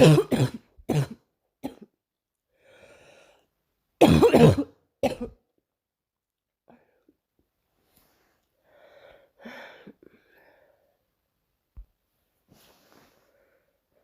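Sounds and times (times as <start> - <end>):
girl coughing: 0.0 - 1.9, 4.0 - 5.4.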